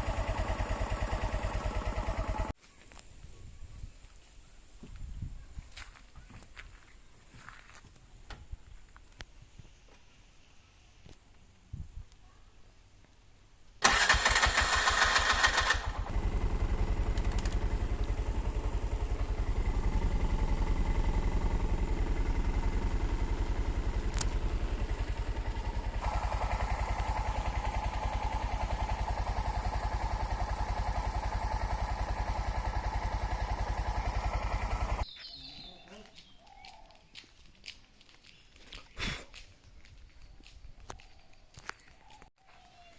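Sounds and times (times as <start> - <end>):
vehicle engine starting and idling: 0.0 - 2.6, 13.8 - 35.1.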